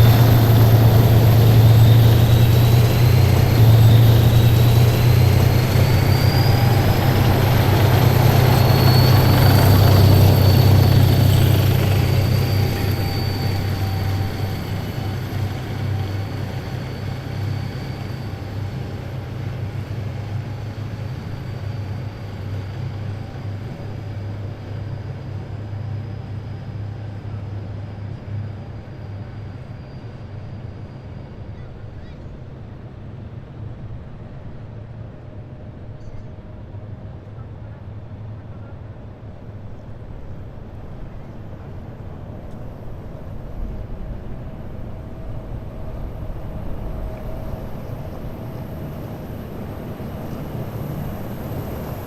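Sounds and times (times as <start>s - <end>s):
heavy vehicle engines rumbling: 0.0s - 27.9s
faint high whine: 0.0s - 31.7s, 38.6s - 52.0s.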